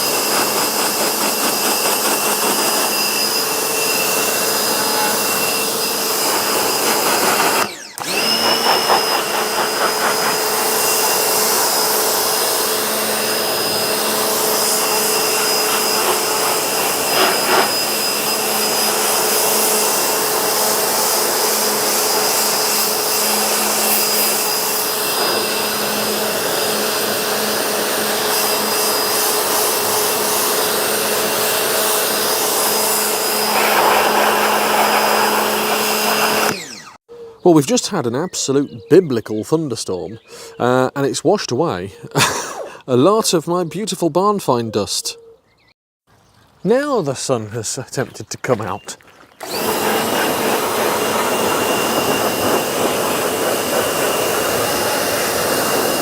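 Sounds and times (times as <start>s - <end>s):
vacuum cleaner running: 0.0s - 37.0s, 49.1s - 56.0s.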